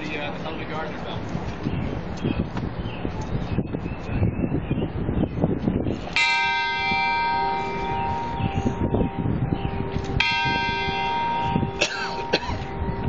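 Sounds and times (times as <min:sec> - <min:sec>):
large tower bell ringing: 0:06.1 - 0:13.0.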